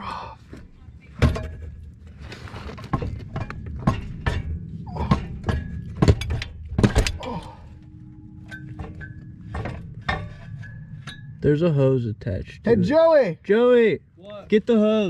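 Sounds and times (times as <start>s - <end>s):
metal knocks and clunks: 1.1s - 7.5s, 8.4s - 11.4s.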